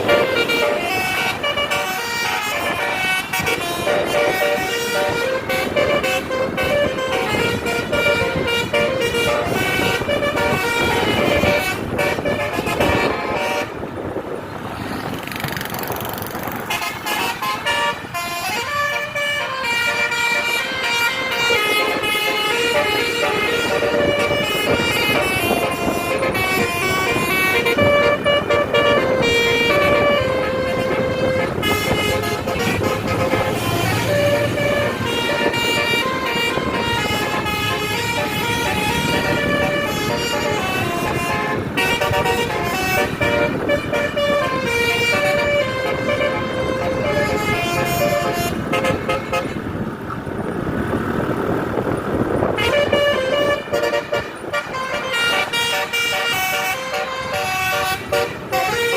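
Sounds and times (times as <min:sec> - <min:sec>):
multi-tone bus horn tunes: 0:00.0 - 0:14.4, 0:16.5 - 0:49.9, 0:51.8 - 0:58.9.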